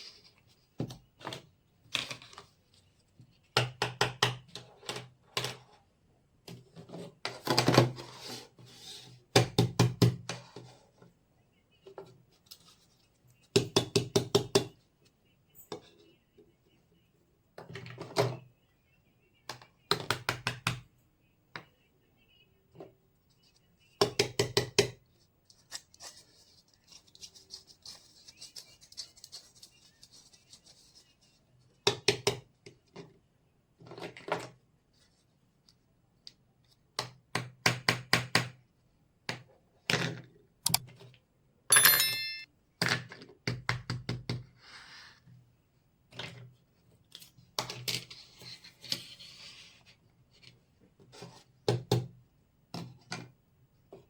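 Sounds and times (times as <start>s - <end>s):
toy kitchen pieces clicking: 40.6s - 40.9s
bright ringing clink: 41.7s - 42.5s.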